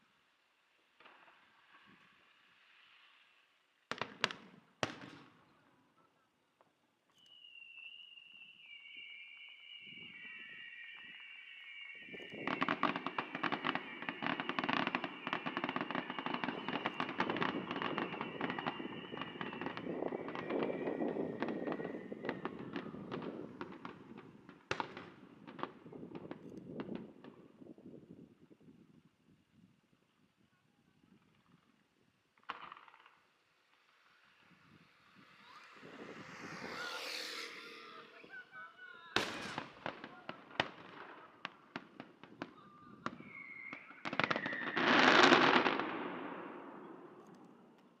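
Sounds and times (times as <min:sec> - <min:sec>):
fireworks crackling and popping: 0:00.0 - 0:05.8, 0:06.5 - 0:29.0, 0:30.3 - 0:48.0
loud firework bang: 0:39.2 - 0:40.1.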